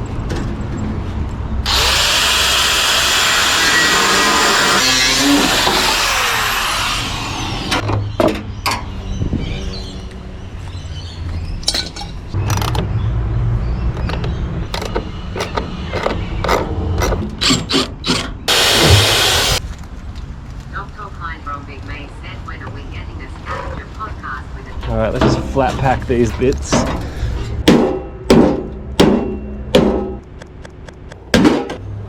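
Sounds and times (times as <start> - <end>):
power drill whining: 1.6 - 7.8, 17.4 - 19.6
metallic clicks and knocks: 11.6 - 12.9, 13.9 - 18.4.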